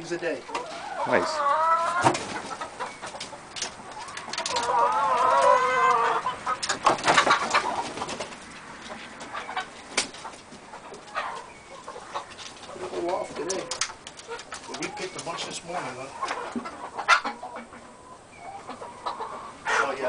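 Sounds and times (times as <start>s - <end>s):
hens clucking: 0.0s - 20.0s
knocks and rustles: 6.6s - 9.3s.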